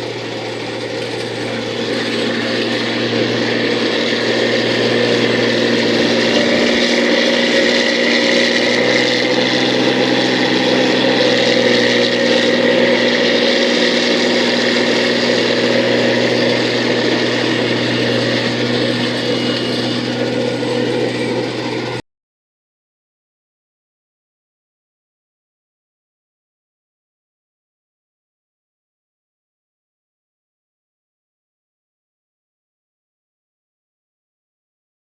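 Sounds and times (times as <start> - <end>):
combine harvester engine whirring: 0.0 - 22.0.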